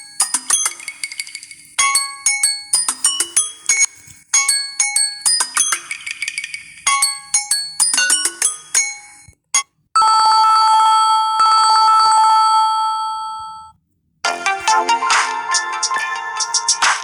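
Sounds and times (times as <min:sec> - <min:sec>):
bell-like ringtone melody: 0:00.1 - 0:09.3, 0:14.3 - 0:17.0
electronic ringtone: 0:00.2 - 0:17.0.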